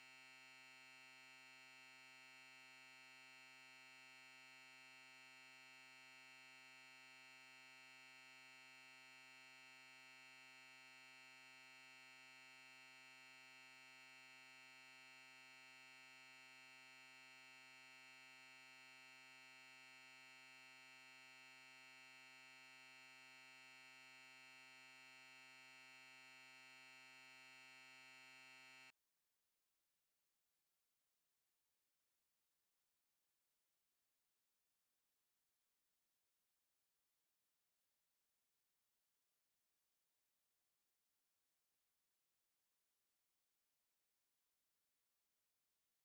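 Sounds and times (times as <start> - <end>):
faint buzzy electronic drone: 0.1 - 28.9.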